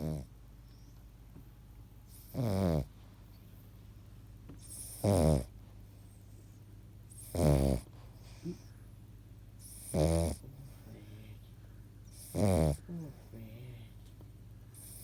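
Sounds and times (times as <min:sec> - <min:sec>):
loud short snores: 0:02.3 - 0:02.9, 0:04.7 - 0:05.5, 0:07.2 - 0:07.8, 0:09.7 - 0:10.4, 0:12.2 - 0:12.8
quiet breathing: 0:04.6 - 0:15.0.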